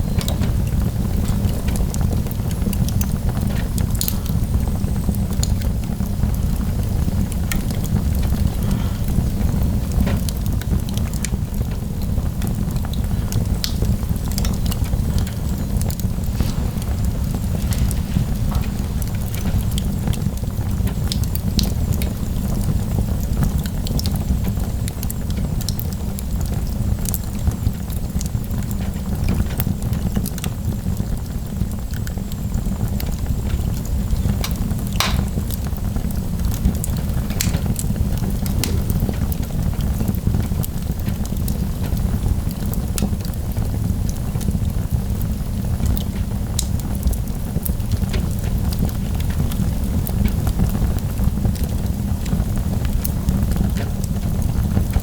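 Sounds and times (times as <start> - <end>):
wood fire crackling: 0.0 - 55.0
low rumble: 14.0 - 20.9
sharp pops: 34.4 - 35.5.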